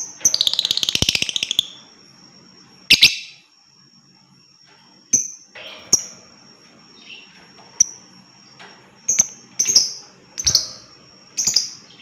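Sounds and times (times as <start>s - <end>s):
lovebirds chirping: 0.0s - 2.0s, 2.8s - 3.5s, 6.9s - 12.0s.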